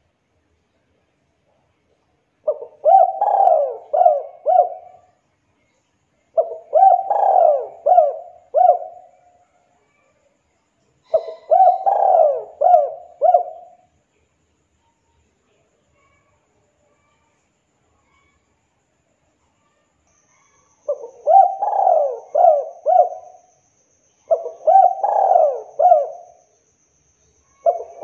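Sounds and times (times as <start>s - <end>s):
dove cooing: 2.5s - 5.1s, 6.4s - 9.2s, 11.1s - 13.8s, 20.9s - 23.5s, 24.3s - 26.4s, 27.5s - 28.0s.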